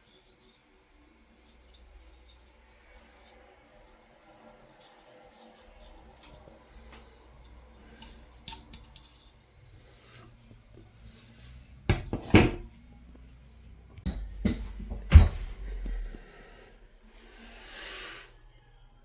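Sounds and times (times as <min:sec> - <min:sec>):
hard parts knocking and clattering: 0:14.0 - 0:16.0.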